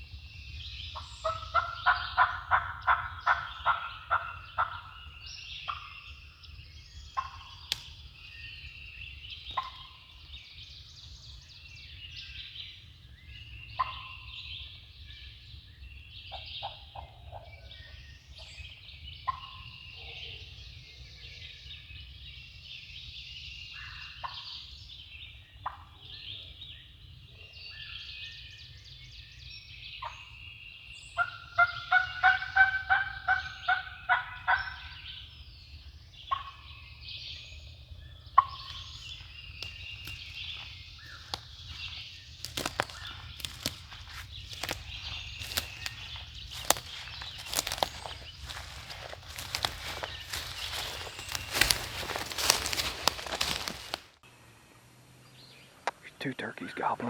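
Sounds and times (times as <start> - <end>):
songbird chorus: 0.0 - 57.0
turkey yelping: 1.2 - 4.9, 31.2 - 35.0.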